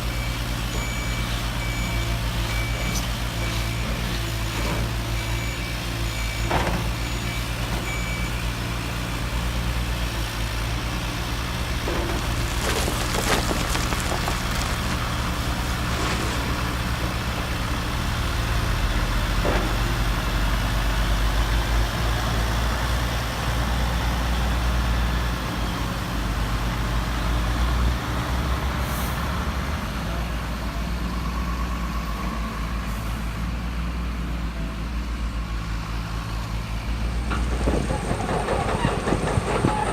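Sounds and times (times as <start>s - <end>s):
reversing beeps: 0.0s - 8.7s.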